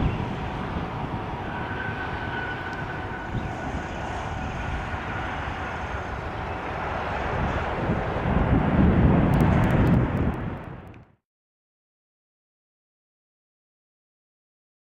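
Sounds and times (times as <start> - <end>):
jet engines running: 0.0 - 11.2.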